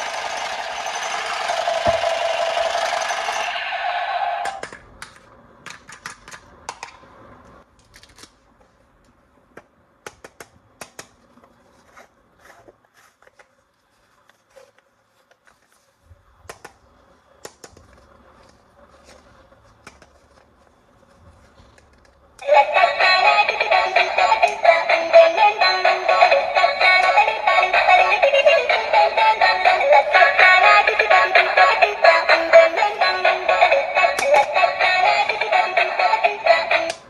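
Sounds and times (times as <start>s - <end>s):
loud motor buzz: 0.0s - 3.6s
plastic toy parts clicking: 4.5s - 7.0s, 10.0s - 11.2s.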